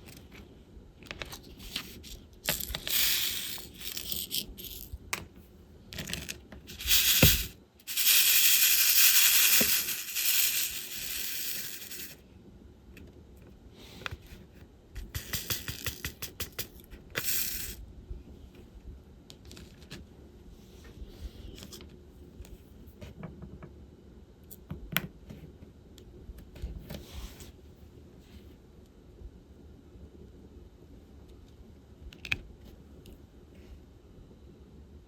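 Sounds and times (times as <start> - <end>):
plastic beads shaken in a tray: 1.6 - 5.0, 6.0 - 12.2, 15.0 - 17.8.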